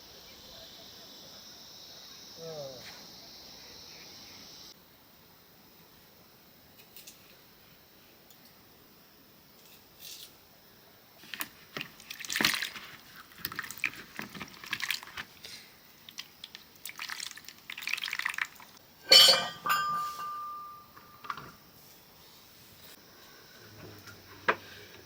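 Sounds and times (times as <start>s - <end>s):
water splashing and sloshing: 11.3s - 15.4s, 16.0s - 18.8s.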